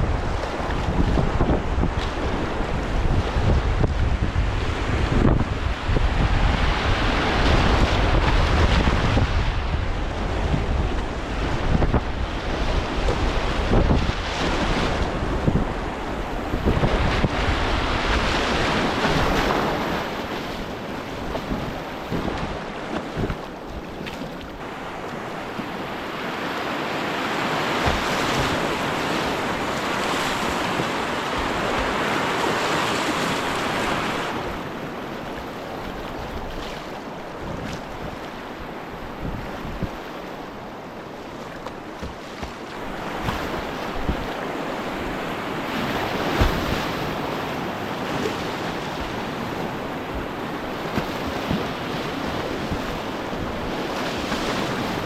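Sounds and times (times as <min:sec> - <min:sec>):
rushing river whitewater: 0:24.5 - 0:39.3, 0:40.3 - 0:55.0.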